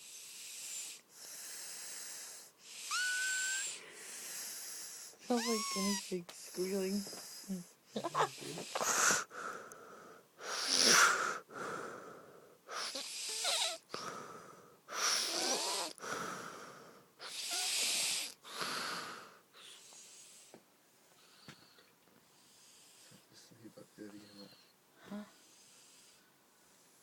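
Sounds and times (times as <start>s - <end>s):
loud rhythmic snoring: 0.0s - 20.6s, 22.3s - 27.0s.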